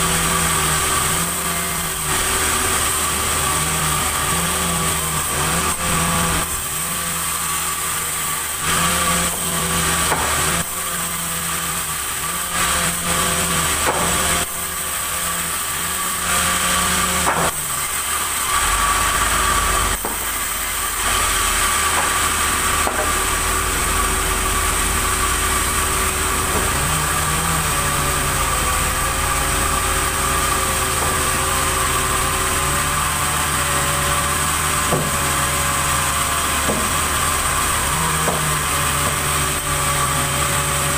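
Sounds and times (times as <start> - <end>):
high machine whine: 0.0 - 40.9
sawmill engine hum: 0.0 - 40.9
sharp knocks: 10.0 - 10.4, 13.8 - 14.2, 21.9 - 22.2, 22.8 - 23.2, 34.9 - 35.2, 36.6 - 36.9, 38.2 - 39.2.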